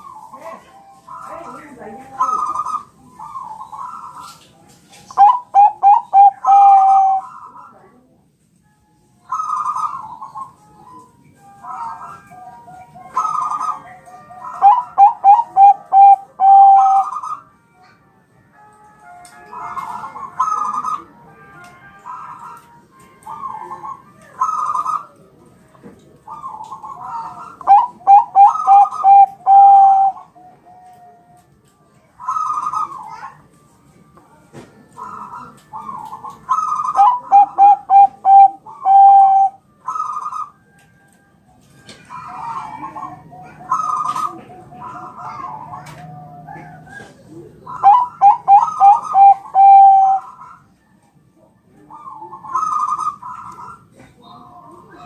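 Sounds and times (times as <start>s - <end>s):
dove cooing: 0.0s - 4.4s, 5.1s - 7.8s, 9.3s - 11.0s, 11.6s - 17.5s, 19.5s - 21.2s, 22.0s - 25.4s, 26.2s - 31.1s, 32.2s - 33.4s, 35.0s - 40.6s, 42.0s - 50.9s, 51.8s - 55.0s.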